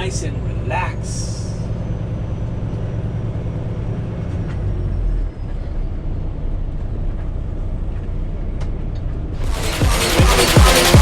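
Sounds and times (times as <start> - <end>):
diesel truck engine rumbling: 0.0 - 7.8.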